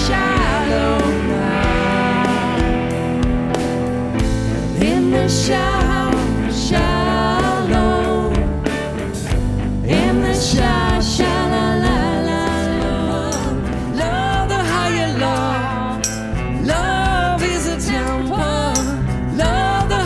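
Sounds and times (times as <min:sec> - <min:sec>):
person singing: 0:00.0 - 0:03.8, 0:04.5 - 0:09.2, 0:09.8 - 0:20.0
instrumental backing with beat: 0:00.0 - 0:14.8.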